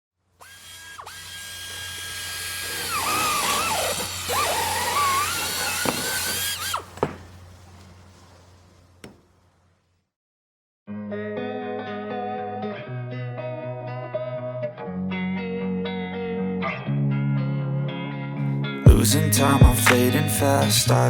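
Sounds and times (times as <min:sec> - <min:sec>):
power tool motor whining: 0:00.3 - 0:09.9.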